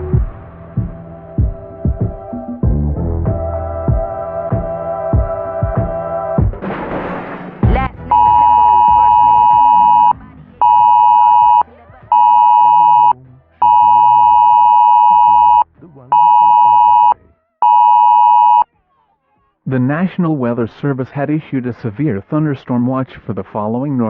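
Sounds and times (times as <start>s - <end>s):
electronic tone beeping: 8.1s - 15.6s, 16.2s - 18.6s.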